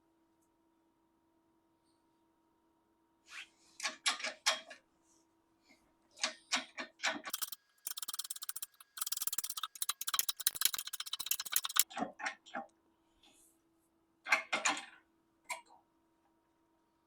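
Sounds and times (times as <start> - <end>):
sharp clicks and ticking: 7.3 - 11.8.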